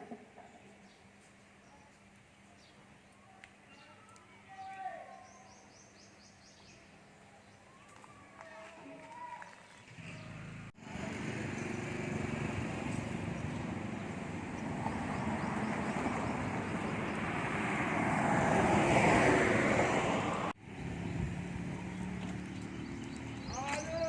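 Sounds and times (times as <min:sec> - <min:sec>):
motor vehicle passing: 0:09.7 - 0:24.0.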